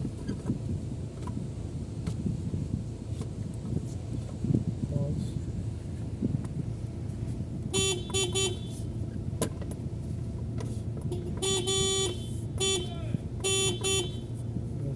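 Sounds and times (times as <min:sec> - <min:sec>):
car horn toots: 0:07.7 - 0:08.8, 0:11.1 - 0:14.3.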